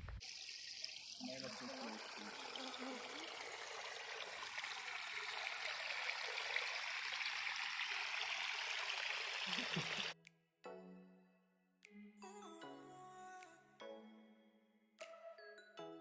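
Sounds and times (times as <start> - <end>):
small waterfall splashing: 0.2 - 10.2.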